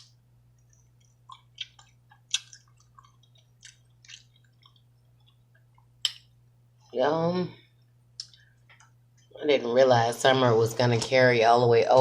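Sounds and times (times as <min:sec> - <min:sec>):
close chewing with wet mouth clicks: 0:00.6 - 0:06.3.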